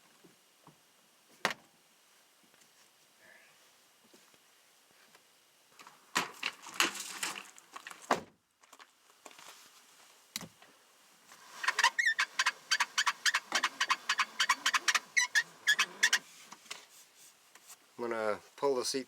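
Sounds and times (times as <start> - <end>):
brief squeak: 11.5 - 16.3.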